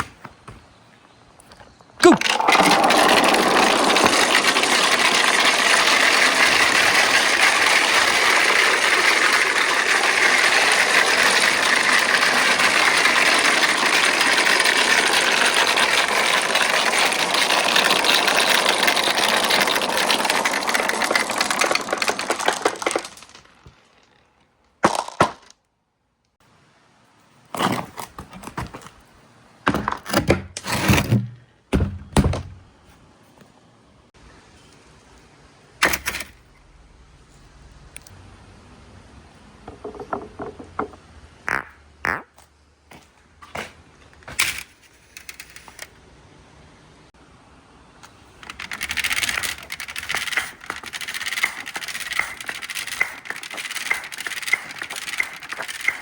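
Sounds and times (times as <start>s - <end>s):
marbles rolling down track: 2.0s - 24.3s, 44.4s - 45.9s, 48.4s - 56.0s
marbles clattering: 2.0s - 25.5s, 44.4s - 45.9s, 48.4s - 56.0s.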